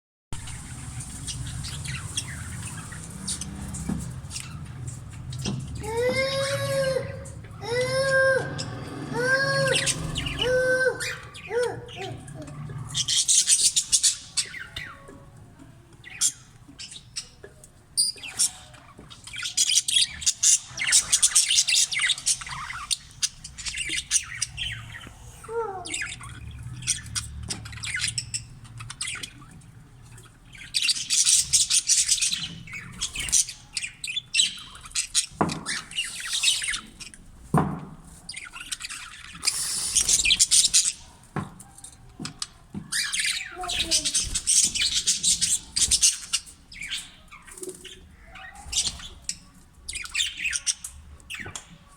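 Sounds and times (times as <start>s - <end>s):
budgerigars chattering and squawking: 0.5s - 15.0s, 18.0s - 37.3s, 38.3s - 41.2s, 42.9s - 51.8s.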